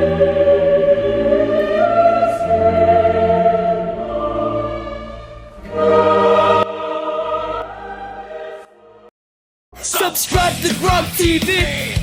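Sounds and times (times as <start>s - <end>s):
choir singing held chords: 0.0s - 9.1s.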